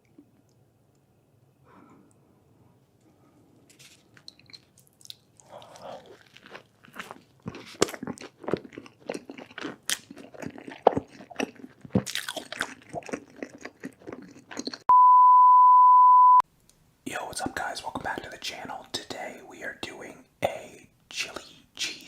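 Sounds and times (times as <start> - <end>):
crunchy chewing: 3.7 - 14.9
steady single-pitch beep: 14.9 - 16.4.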